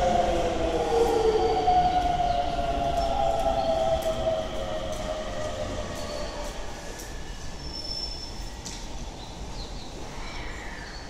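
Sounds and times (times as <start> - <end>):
electric train whine: 0.0 - 8.5
train rumble: 0.0 - 10.1.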